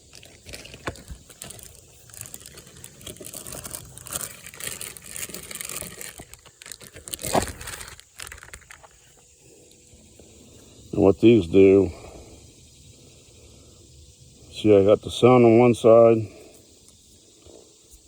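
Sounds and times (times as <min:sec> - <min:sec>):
rustling and crinkling: 0:00.0 - 0:09.9.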